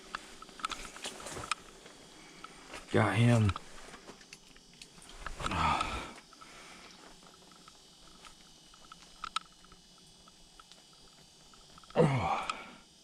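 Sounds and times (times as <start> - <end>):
man grunting: 12.0 - 12.7.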